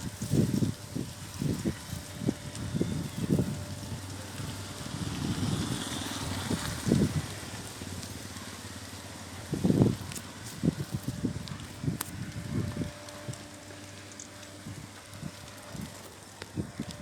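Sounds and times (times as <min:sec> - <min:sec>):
wind buffeting microphone: 0:00.0 - 0:08.2, 0:09.3 - 0:17.0.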